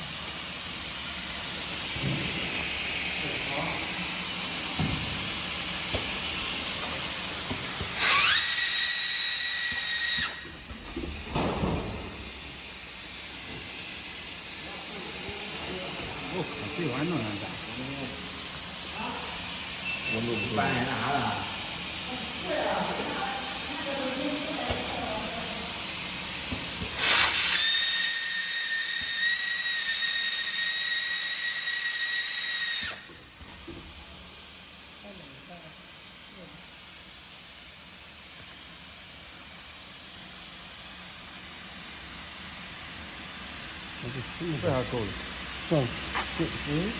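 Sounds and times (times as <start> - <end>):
hot air blast hissing: 0.0 - 37.9, 38.6 - 46.9
high-pitched motor whine: 6.7 - 11.1, 18.9 - 25.8
motor whine rising in pitch: 7.7 - 11.1.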